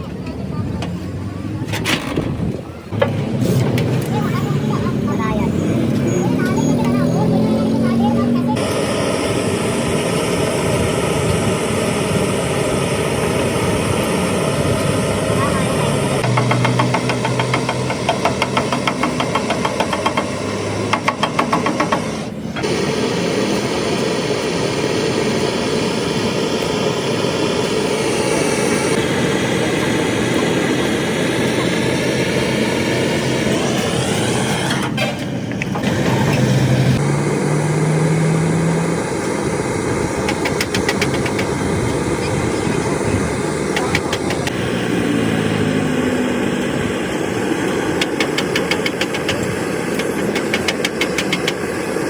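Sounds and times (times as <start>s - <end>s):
bus diesel engine revving: 0.0s - 52.0s
rapid regular engine knocking: 15.9s - 22.7s, 39.9s - 44.6s, 47.8s - 52.0s.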